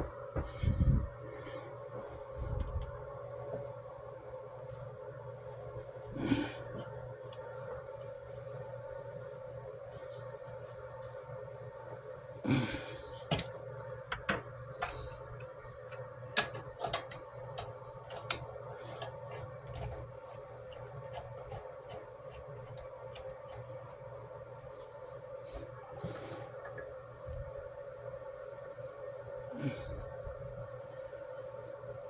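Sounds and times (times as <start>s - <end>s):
steady hum: 0.0s - 32.0s
metallic clinks and knocks: 14.1s - 17.2s.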